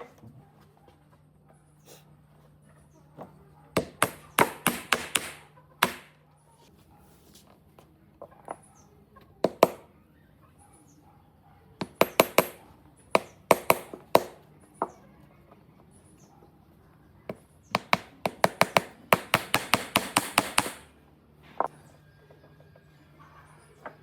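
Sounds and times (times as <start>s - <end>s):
hammer knocking on wood: 3.8s - 6.1s, 9.4s - 9.8s, 11.8s - 12.6s, 13.2s - 14.4s, 17.7s - 20.9s.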